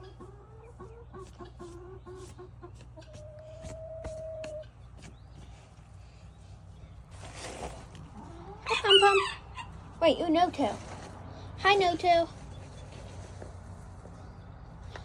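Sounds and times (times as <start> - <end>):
hens clucking: 0.0 - 5.9, 7.8 - 10.0.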